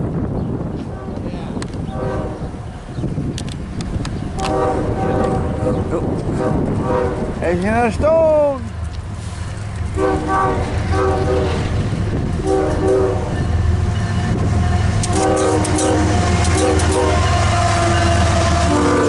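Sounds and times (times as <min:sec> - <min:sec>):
train air horn blasts: 0:01.9 - 0:02.5, 0:04.4 - 0:07.4, 0:09.9 - 0:11.8, 0:12.4 - 0:13.6, 0:14.2 - 0:19.0
train wheels clicking on rail: 0:02.9 - 0:06.8, 0:08.5 - 0:19.0.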